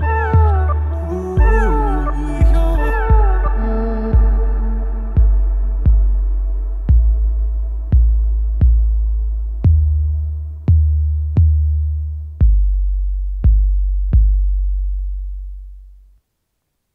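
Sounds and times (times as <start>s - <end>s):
deep bass drum hits: 0.0s - 11.8s.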